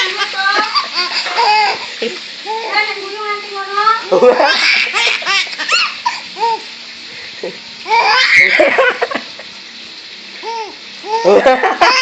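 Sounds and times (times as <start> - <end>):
baby laughing: 0.0 - 2.8, 4.1 - 6.7, 7.9 - 9.3, 10.4 - 12.0.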